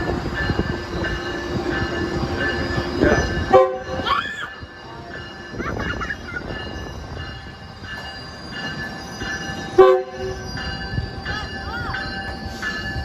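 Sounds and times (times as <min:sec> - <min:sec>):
train rumble: 0:00.0 - 0:13.0.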